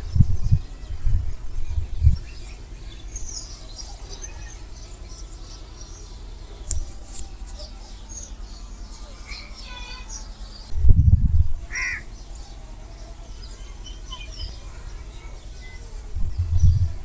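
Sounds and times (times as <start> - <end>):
low rumbling thumps: 0.0 - 2.8, 9.8 - 11.7, 16.1 - 17.0
birds chirping: 0.0 - 17.0
sharp click: 6.7 - 7.3.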